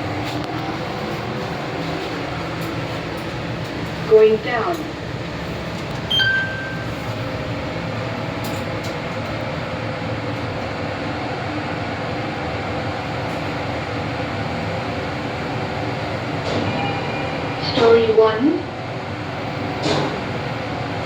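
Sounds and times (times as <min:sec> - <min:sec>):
lift humming and rumbling: 0:00.0 - 0:21.0
short high beep: 0:06.1 - 0:07.0.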